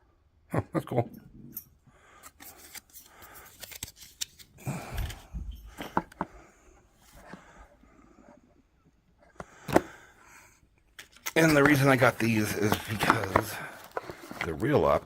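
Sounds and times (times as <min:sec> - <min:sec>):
clicks and taps of case: 0:09.4 - 0:09.9, 0:12.6 - 0:14.1
rustling: 0:11.1 - 0:15.0.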